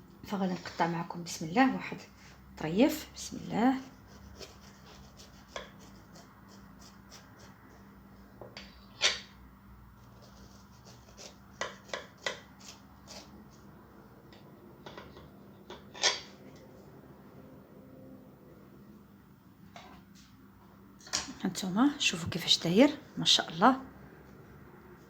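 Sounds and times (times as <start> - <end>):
knife scraping through cake: 3.7 - 8.0, 10.0 - 13.7.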